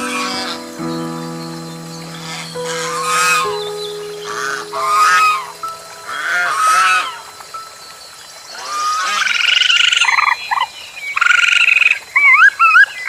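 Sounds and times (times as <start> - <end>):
pulsed trills: 0.0 - 8.3.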